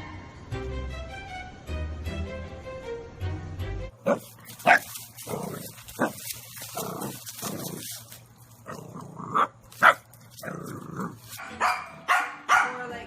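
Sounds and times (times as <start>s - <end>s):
dog barking: 4.0s - 7.9s, 9.3s - 10.1s, 11.3s - 12.8s
soft low dog sounds: 4.1s - 8.8s.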